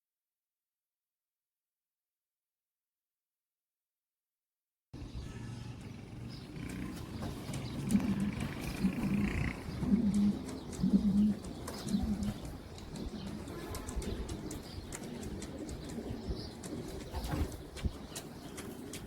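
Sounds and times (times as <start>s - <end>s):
pigeons cooing: 6.2s - 19.0s.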